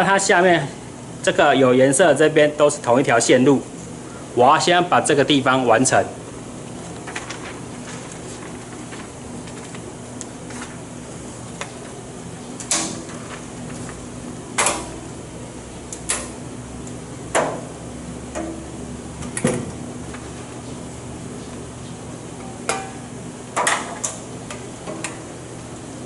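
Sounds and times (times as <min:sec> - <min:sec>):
steady low hum: 0:00.0 - 0:26.0
wiring leads clicking into terminals: 0:14.6 - 0:14.9, 0:15.9 - 0:17.5, 0:23.6 - 0:25.2.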